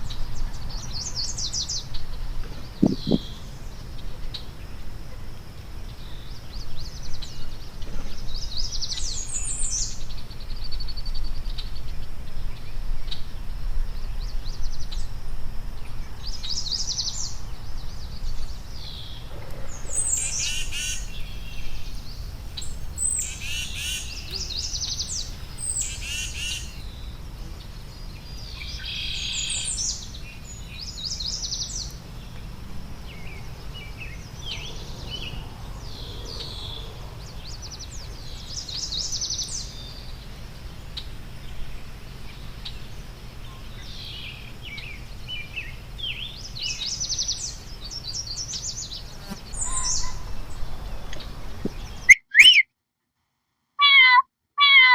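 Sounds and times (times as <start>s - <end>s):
songbirds chirping: 0.8s - 4.5s, 18.0s - 26.9s, 46.0s - 52.6s.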